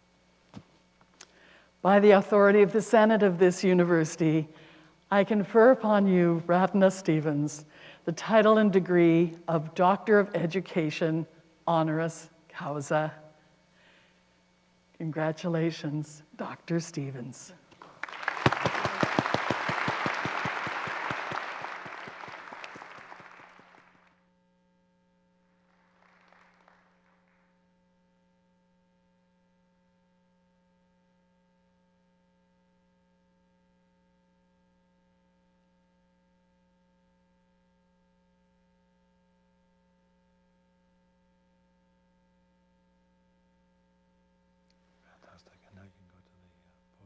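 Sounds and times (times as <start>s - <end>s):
faint electrical hum: 0.0s - 47.0s
audience applauding: 17.8s - 24.1s, 25.8s - 27.2s.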